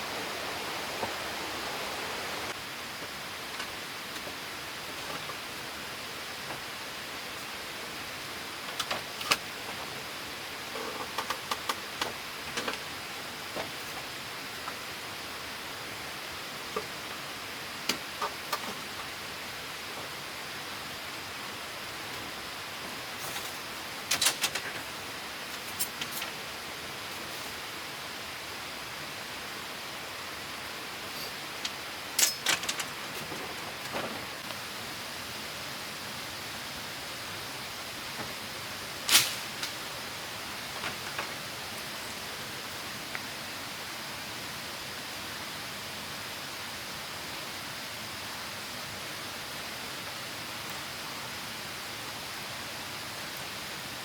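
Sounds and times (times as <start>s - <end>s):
waterfall rushing: 0.0s - 2.6s
steady rushing hiss: 0.0s - 54.0s.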